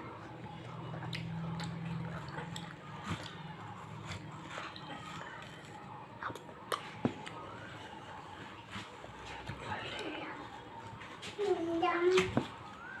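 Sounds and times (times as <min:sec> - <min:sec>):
person chewing watermelon: 0:00.0 - 0:07.8.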